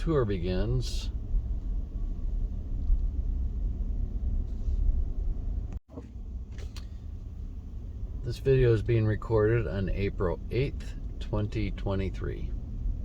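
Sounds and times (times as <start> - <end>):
car driving heard from inside: 0.0 - 13.0.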